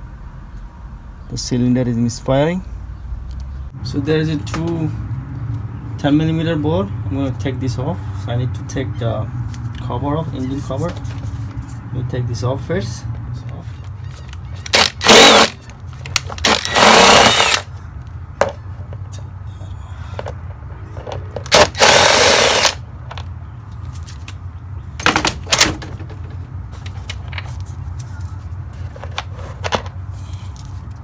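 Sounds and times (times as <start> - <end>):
power driver spinning out bolts: 14.6 - 17.7, 21.4 - 22.8.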